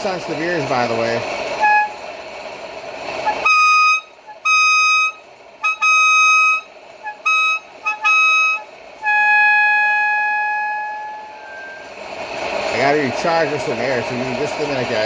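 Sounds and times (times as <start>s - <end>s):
air-powered bicycle horn blasts: 1.6s - 2.0s, 3.2s - 11.9s.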